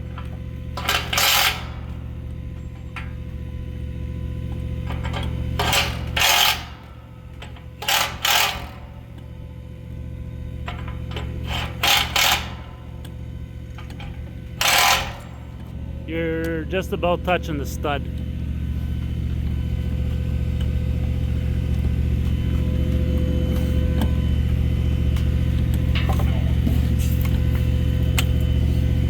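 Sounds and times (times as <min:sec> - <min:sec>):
low machinery hum: 0:00.0 - 0:29.0.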